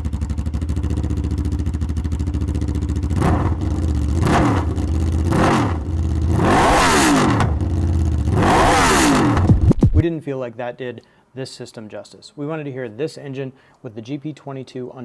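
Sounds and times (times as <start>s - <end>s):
motorcycle engine idling: 0.0s - 6.4s, 7.4s - 8.4s
motorcycle engine revving: 0.0s - 10.0s.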